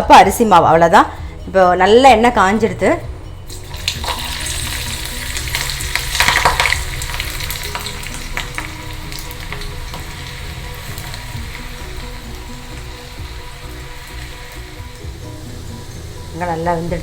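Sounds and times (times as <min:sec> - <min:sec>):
fritters sizzling and popping in oil: 0:03.5 - 0:17.0.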